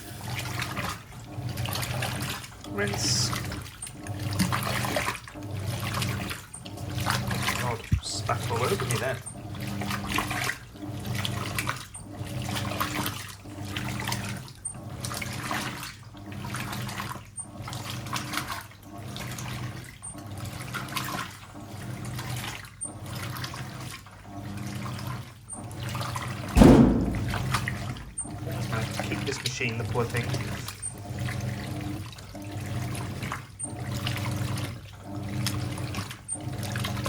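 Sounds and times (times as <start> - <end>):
motor hum: 0.0 - 17.9, 24.6 - 37.0
washing machine agitating: 0.0 - 37.0
water sloshing and splashing: 0.0 - 37.0
loud knock: 26.6 - 28.3.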